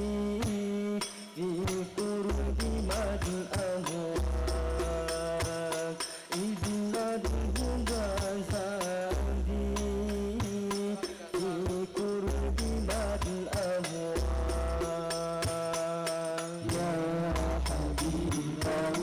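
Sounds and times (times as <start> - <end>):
devotional song with frame drums: 0.0 - 19.0.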